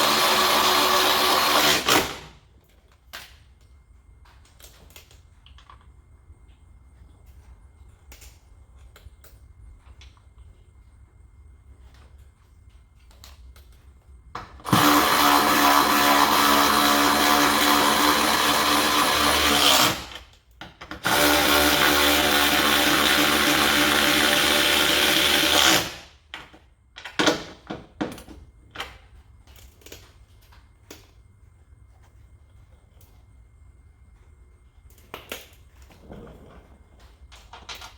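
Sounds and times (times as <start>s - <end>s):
power tool motor running: 0.0s - 2.3s, 14.6s - 20.2s, 21.0s - 26.1s.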